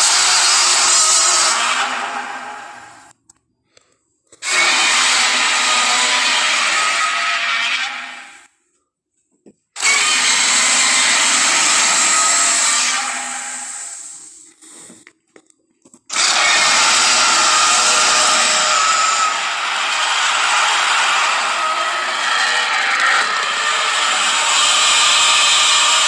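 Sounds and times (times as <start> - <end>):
monster roars: 4.4 - 8.2, 16.1 - 26.0.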